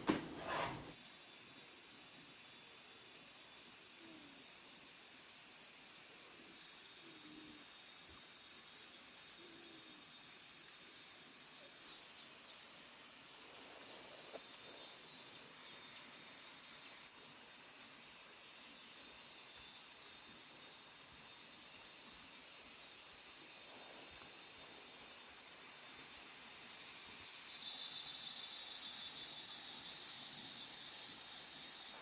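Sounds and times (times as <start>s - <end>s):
insects chirping: 0.5s - 32.0s.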